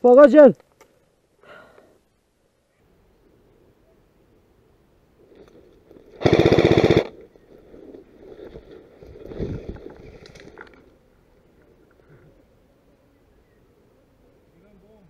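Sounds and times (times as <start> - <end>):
airsoft gun full-auto burst: 6.2 - 7.2.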